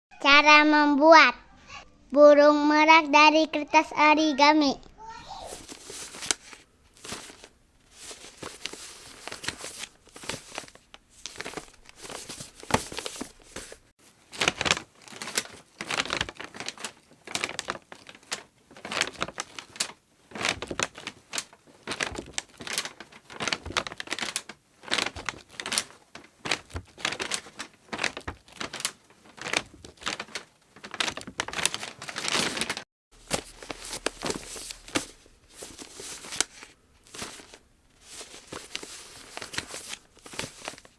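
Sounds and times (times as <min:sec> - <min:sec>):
paper creases swiped: 0:05.2 - 0:13.8, 0:32.6 - 0:40.9
paper crinkling and rustling: 0:05.2 - 0:40.9.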